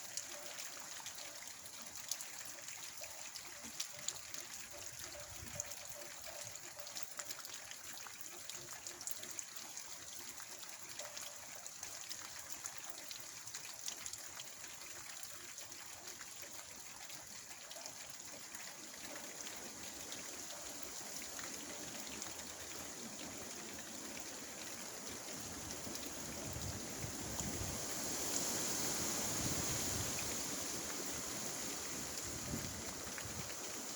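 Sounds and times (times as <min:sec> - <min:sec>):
steady rain: 0:00.0 - 0:05.3, 0:17.7 - 0:33.9
water trickling: 0:00.0 - 0:33.9
drips ticking: 0:00.1 - 0:27.6.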